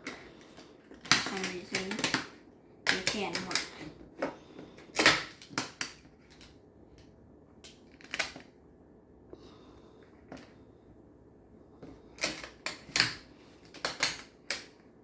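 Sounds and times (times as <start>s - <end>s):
plastic magnet tiles clacking: 0.9s - 3.8s.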